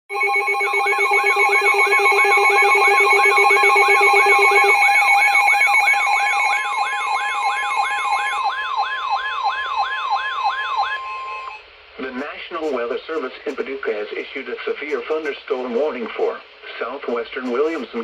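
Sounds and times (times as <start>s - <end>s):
siren warbling rapidly: 0.1s - 11.6s
steady alarm tones: 0.1s - 13.7s, 17.1s - 18.0s.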